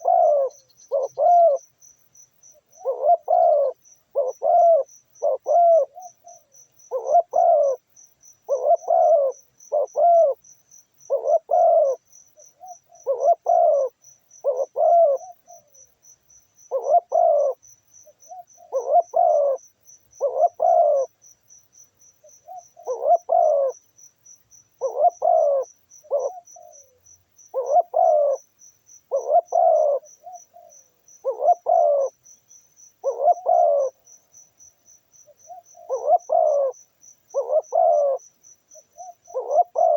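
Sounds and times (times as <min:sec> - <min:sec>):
doves cooing: 0:00.0 - 0:01.7, 0:02.7 - 0:07.8, 0:08.5 - 0:10.4, 0:11.1 - 0:15.8, 0:16.7 - 0:17.6, 0:18.2 - 0:19.6, 0:20.2 - 0:21.1, 0:22.2 - 0:23.8, 0:24.8 - 0:28.4, 0:29.1 - 0:32.2, 0:33.0 - 0:34.0, 0:35.3 - 0:39.9
insect trilling: 0:00.0 - 0:15.9, 0:16.5 - 0:39.9.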